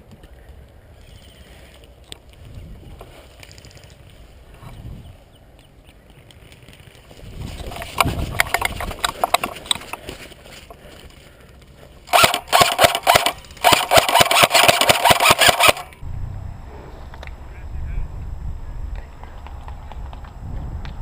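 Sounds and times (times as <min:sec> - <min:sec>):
airsoft gun firing full auto: 0:12.1 - 0:16.0.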